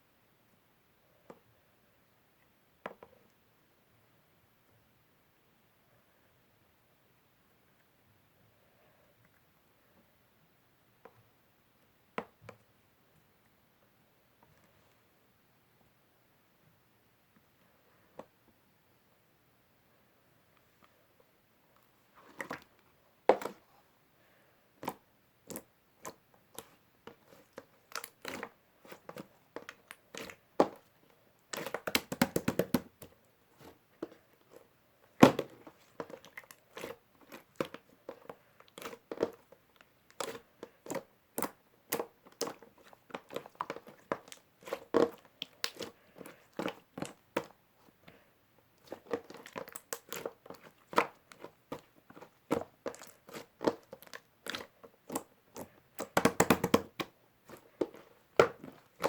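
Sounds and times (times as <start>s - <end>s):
sharp clicks and taps: 31.8s - 33.1s, 56.0s - 57.1s.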